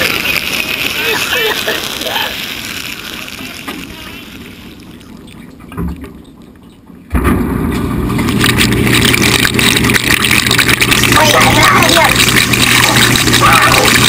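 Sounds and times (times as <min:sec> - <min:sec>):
water spraying: 0:00.0 - 0:06.2, 0:08.1 - 0:14.0
dishwasher pump motor hum: 0:07.0 - 0:14.0
low thump: 0:07.1 - 0:07.8.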